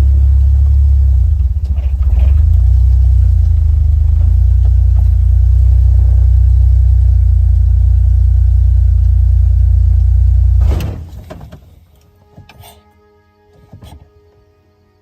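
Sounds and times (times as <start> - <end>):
car engine running: 0.0 - 11.9.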